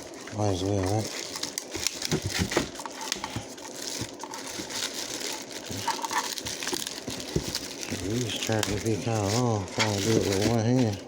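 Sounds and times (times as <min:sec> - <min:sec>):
packaging crinkling and rustling: 0:00.0 - 0:11.0.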